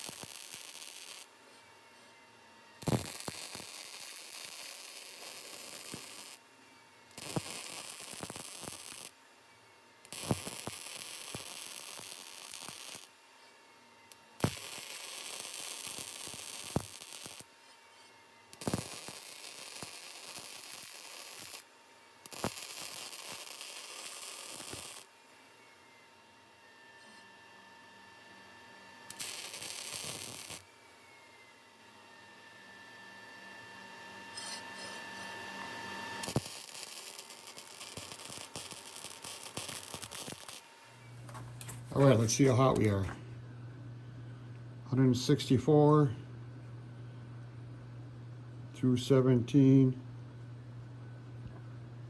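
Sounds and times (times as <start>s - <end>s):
welder arc crackling and hissing: 0.0s - 1.4s, 2.8s - 6.4s, 7.1s - 9.2s, 10.0s - 13.2s, 14.1s - 17.6s, 18.5s - 25.2s, 29.1s - 30.7s, 34.4s - 41.2s.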